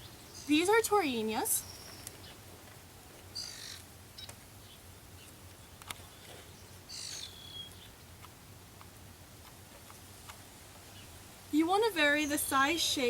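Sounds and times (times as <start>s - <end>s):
high bird calls: 0.0s - 2.4s, 3.3s - 8.0s.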